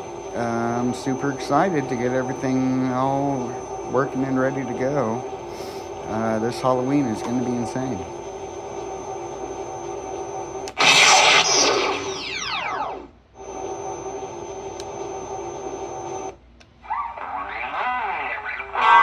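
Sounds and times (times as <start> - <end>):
electronic idle hum: 0.0 - 16.4
loud hissing blast: 10.8 - 12.2
rising power-up sweeps: 10.8 - 13.1.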